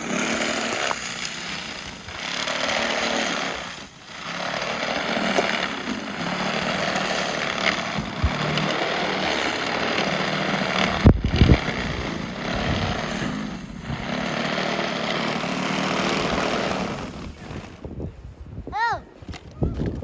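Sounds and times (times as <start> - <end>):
electric snow blower running: 0.0 - 17.8
low thumps: 4.2 - 18.0.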